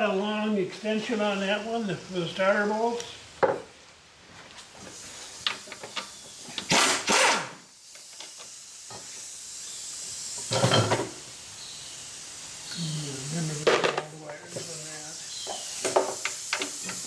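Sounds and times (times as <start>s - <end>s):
short hissing bursts: 4.6s - 17.0s.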